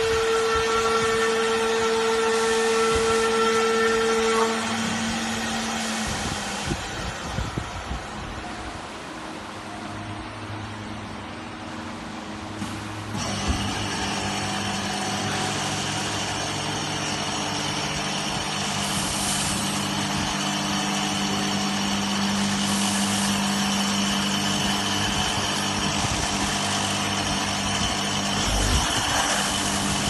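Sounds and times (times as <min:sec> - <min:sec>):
router machine hum and whine: 0:00.0 - 0:30.0
hissing noise: 0:28.3 - 0:30.0.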